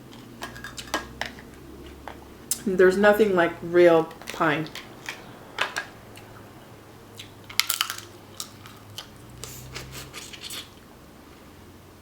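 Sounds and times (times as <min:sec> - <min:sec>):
crab shells cracking: 0:04.1 - 0:06.0, 0:07.2 - 0:10.7
clicks and crunches: 0:04.1 - 0:06.3, 0:07.2 - 0:10.8.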